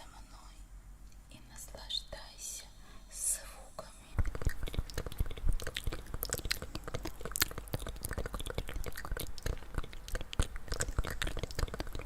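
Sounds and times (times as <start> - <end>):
wet mouth clicks and smacks: 4.2 - 12.0.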